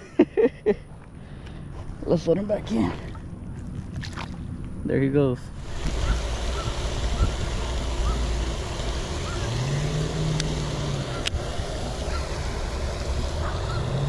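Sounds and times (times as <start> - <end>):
steady low hum: 0.0 - 14.0
wind rumbling on microphone: 1.5 - 14.0
sharp clicks: 5.6 - 11.4.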